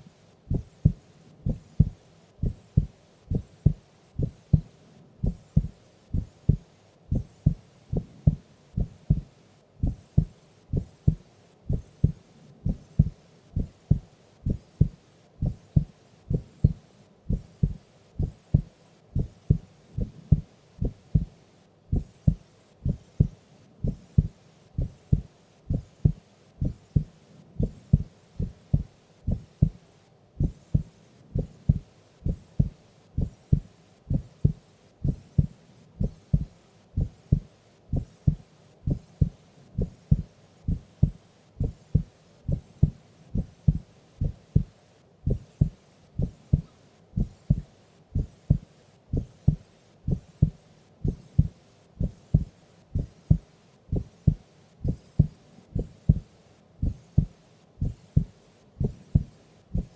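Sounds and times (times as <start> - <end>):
heartbeat thumps: 0.5 - 29.8, 30.4 - 59.9.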